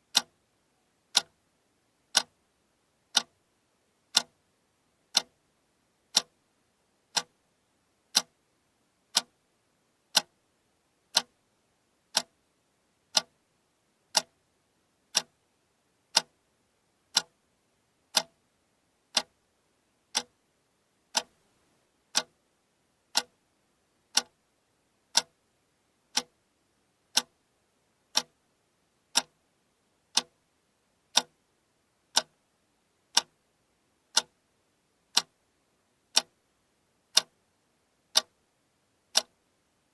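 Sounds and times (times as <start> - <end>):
alarm clock ticking: 17.1 - 17.3, 19.1 - 19.3, 21.1 - 21.3.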